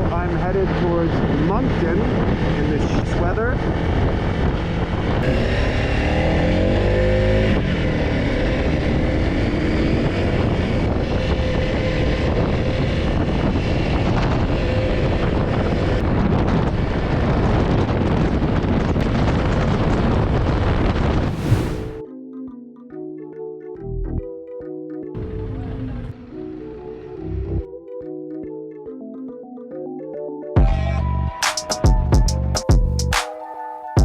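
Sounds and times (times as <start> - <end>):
wind rushing over microphone: 0.0 - 22.0
motorcycle engine accelerating: 1.2 - 22.0.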